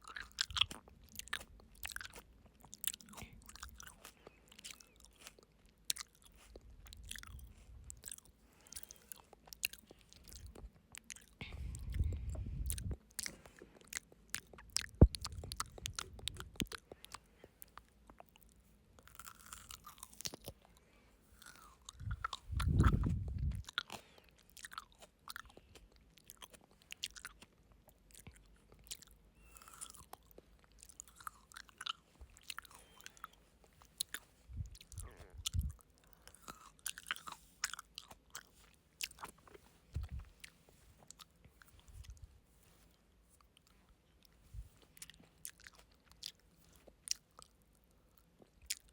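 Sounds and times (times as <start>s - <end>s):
frozen grapes crunching: 0.0s - 20.7s
chewing frozen grapes: 0.0s - 48.9s
loud low rumble: 22.0s - 23.6s.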